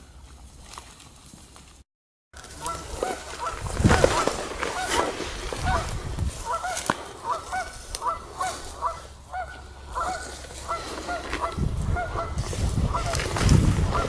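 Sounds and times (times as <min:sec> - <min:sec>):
geese honking: 0:02.4 - 0:14.0.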